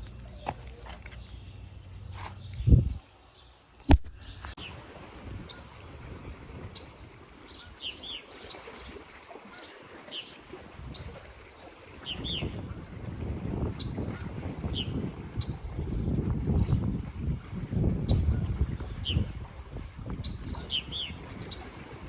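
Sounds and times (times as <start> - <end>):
birds chirping: 0.0 - 4.8, 6.7 - 12.6, 20.2 - 21.9.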